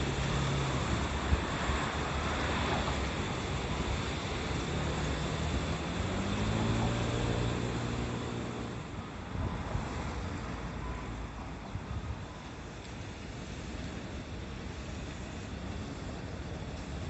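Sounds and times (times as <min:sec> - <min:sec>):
passing vehicle engine hum: 0:00.0 - 0:11.6
rushing river water: 0:00.0 - 0:17.0.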